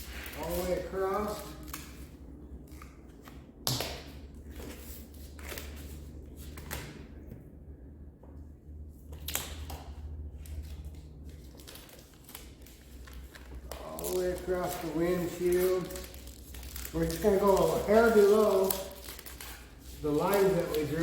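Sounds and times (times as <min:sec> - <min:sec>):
steady low hum: 0:00.0 - 0:21.0
tape crackling and tapping: 0:09.1 - 0:21.0.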